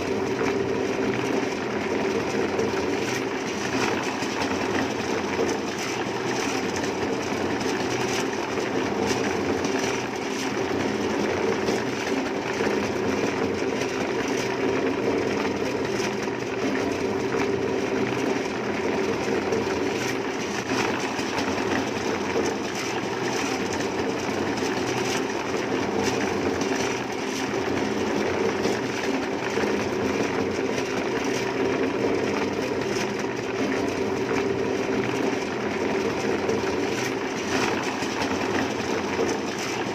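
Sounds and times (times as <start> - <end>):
machine droning: 0.0 - 39.9.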